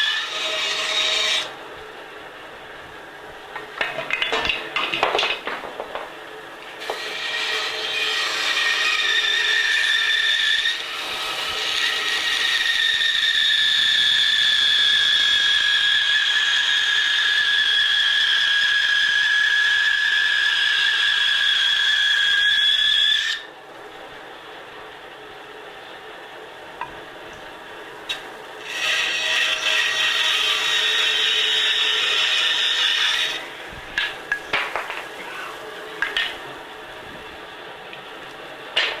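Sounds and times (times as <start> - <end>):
bandsaw cutting wood: 0.0 - 1.6, 6.8 - 23.5, 28.1 - 36.6.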